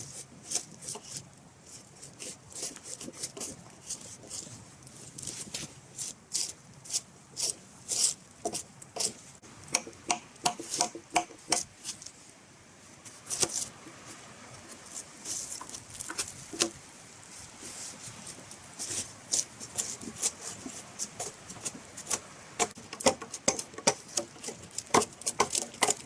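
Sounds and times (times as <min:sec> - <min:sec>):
blade chopping wood: 0:22.1 - 0:26.0.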